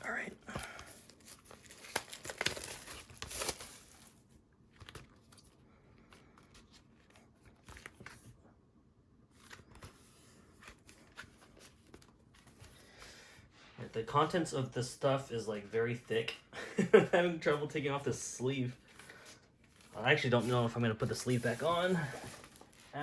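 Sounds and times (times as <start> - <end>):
plastic shrink-wrap crackling: 0.6 - 5.2, 21.3 - 23.0.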